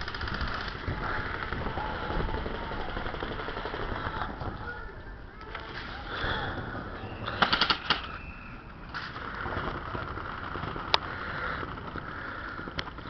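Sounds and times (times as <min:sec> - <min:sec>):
airsoft gun shots: 0:07.3 - 0:08.2.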